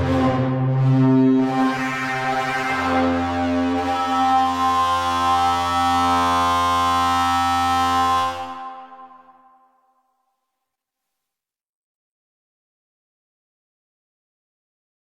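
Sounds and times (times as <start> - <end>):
synthesizer sustained note: 0.0 - 9.7.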